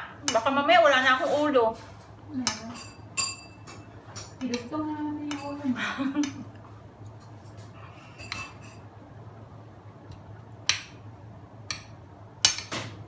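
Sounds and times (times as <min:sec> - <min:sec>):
steady low hum: 0:00.0 - 0:13.0
cutlery clinking against a plate: 0:02.4 - 0:04.7, 0:07.4 - 0:08.8, 0:11.7 - 0:13.0.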